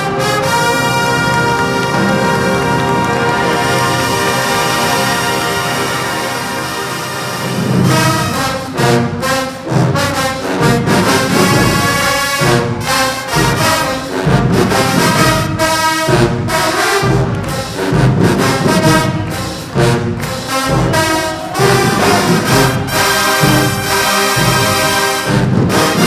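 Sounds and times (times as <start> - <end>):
marching band playing: 0.0 - 26.0.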